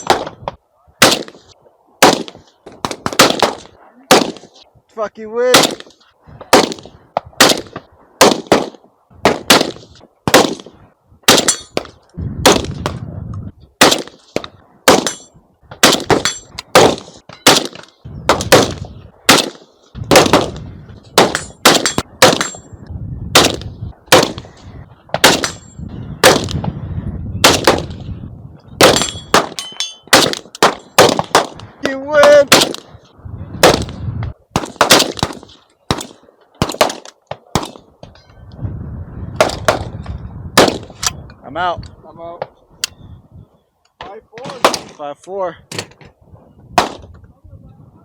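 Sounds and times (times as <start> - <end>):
rifle fire: 0.0 - 0.4, 1.0 - 4.6, 5.5 - 13.0, 13.8 - 22.7, 23.3 - 24.5, 25.2 - 26.6, 27.4 - 28.0, 28.8 - 31.6, 32.3 - 32.9, 33.6 - 37.9, 40.6 - 41.1, 46.8 - 47.1
steel targets ringing: 28.9 - 30.2.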